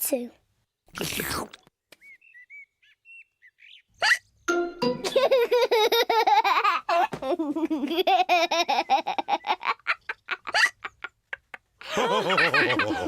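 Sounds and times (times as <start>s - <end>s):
high cartoon laughter: 5.0s - 13.0s
lower voice laughing: 5.0s - 13.0s.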